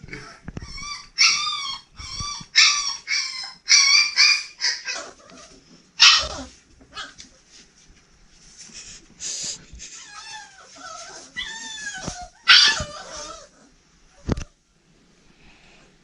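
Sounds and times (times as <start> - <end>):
dog whining: 0.1 - 7.2, 10.0 - 13.8.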